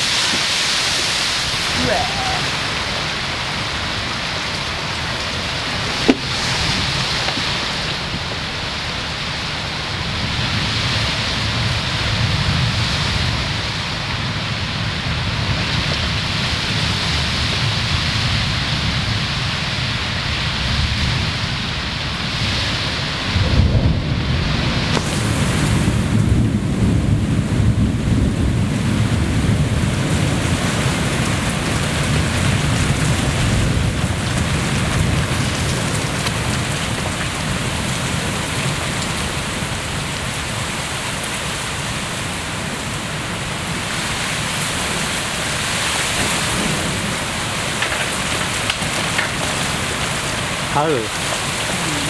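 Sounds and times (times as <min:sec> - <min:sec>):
heavy rain falling: 0:00.0 - 0:52.0
thunder rumbling: 0:23.2 - 0:37.9.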